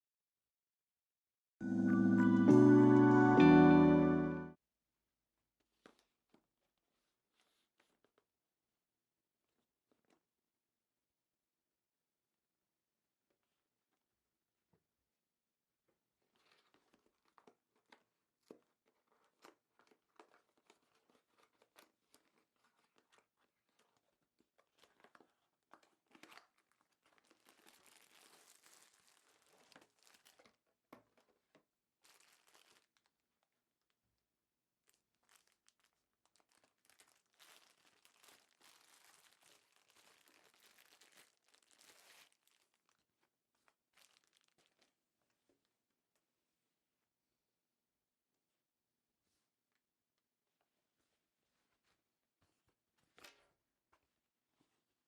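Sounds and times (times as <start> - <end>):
faint crinkling and rustling: 5.4 - 8.4, 9.4 - 10.3, 15.8 - 34.1, 34.8 - 46.6, 50.4 - 55.0.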